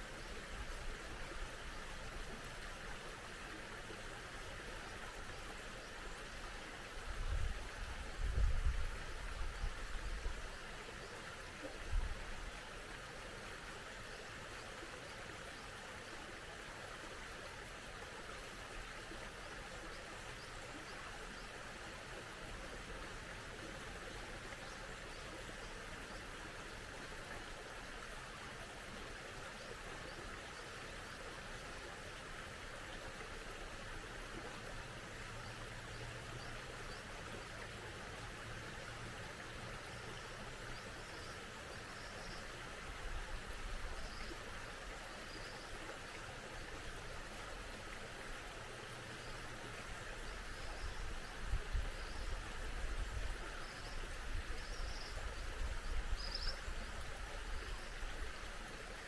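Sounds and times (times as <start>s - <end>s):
mountain stream flowing: 0.0s - 59.0s
faint bird chirps: 45.2s - 45.8s, 53.5s - 58.0s.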